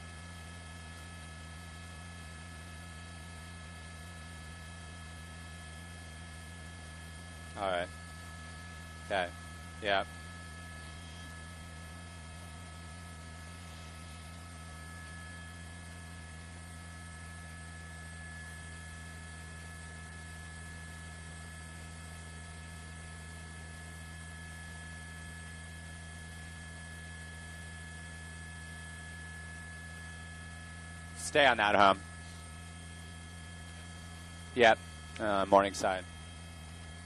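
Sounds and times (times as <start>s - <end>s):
electrical hum with faint hiss: 7.0s - 16.6s, 29.0s - 37.0s.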